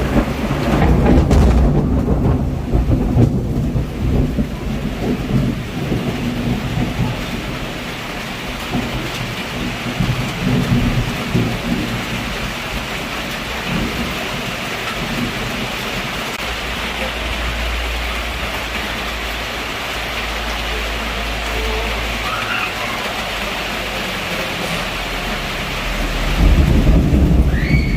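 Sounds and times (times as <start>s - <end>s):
deep rumble: 0.0s - 7.8s, 24.9s - 27.9s
heavy rain: 0.0s - 27.9s
thunder rumbling: 0.0s - 27.9s.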